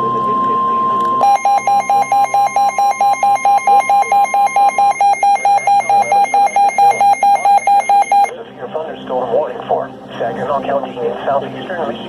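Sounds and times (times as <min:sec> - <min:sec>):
steady high tone: 0:00.0 - 0:08.3
rapid electronic beeping: 0:00.4 - 0:08.3.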